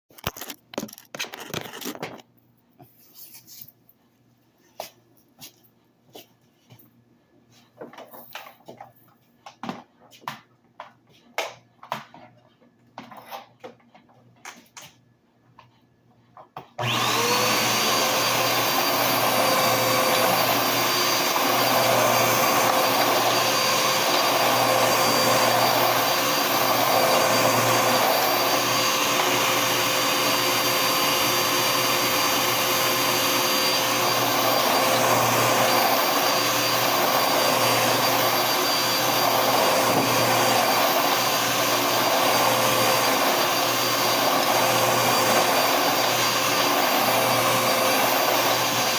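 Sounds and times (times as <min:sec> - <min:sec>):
vacuum cleaner running: 0:16.8 - 0:48.9.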